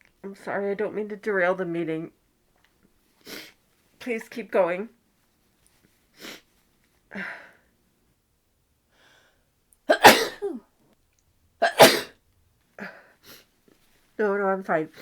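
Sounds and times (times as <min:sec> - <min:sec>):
person sneezing loudly: 0:09.9 - 0:10.6, 0:11.6 - 0:12.1.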